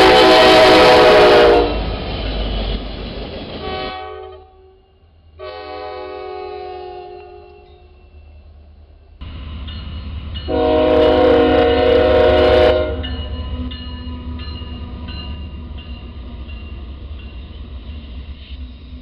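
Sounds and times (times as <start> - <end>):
locomotive horn: 0.0 - 1.9, 3.6 - 7.9, 10.5 - 13.7
train rumble: 0.0 - 19.0.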